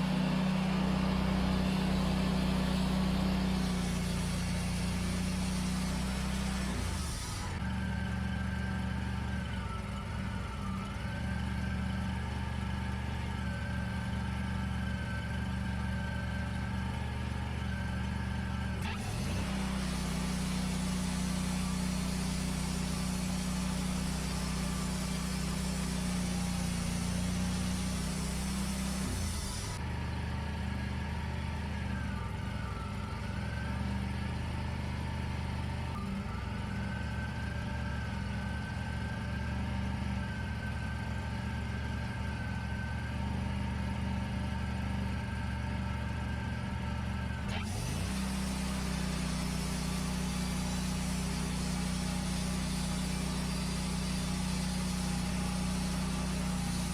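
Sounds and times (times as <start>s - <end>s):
bandsaw mill running: 0.0s - 30.0s, 47.2s - 56.9s.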